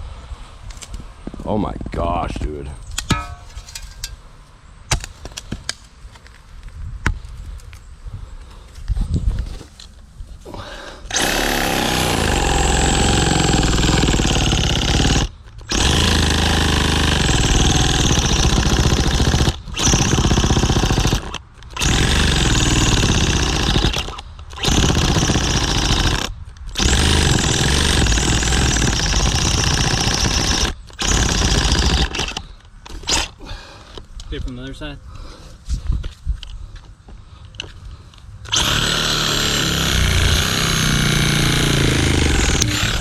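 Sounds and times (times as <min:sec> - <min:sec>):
reciprocating saw cutting root: 0:11.1 - 0:33.4, 0:38.5 - 0:43.0.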